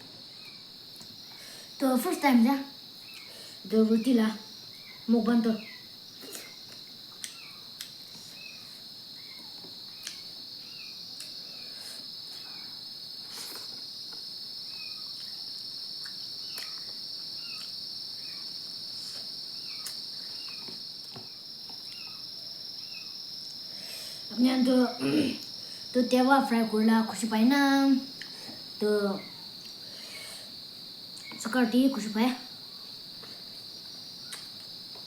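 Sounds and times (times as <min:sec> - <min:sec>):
insect chorus trilling: 0:00.0 - 0:35.0
faint sharp clicks: 0:06.4 - 0:08.0.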